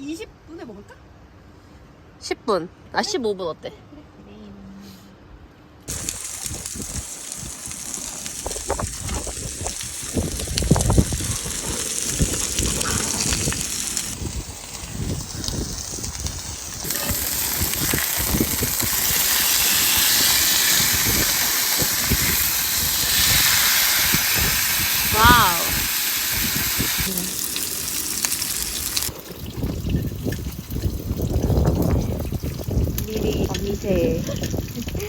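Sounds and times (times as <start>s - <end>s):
wind buffeting microphone: 5.9s - 27.1s, 28.6s - 35.0s
steady hiss: 5.9s - 29.2s.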